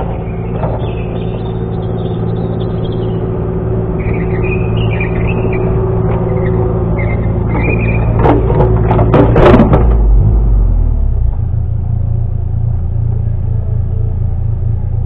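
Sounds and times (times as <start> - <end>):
metal clanks and knocks: 0.0 - 1.3, 7.5 - 10.3
excavator engine running: 0.0 - 15.0.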